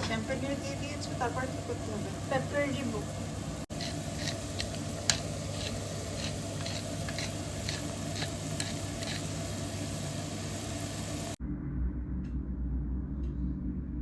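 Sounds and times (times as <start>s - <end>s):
mushrooms sizzling in a frying pan: 0.0s - 11.4s.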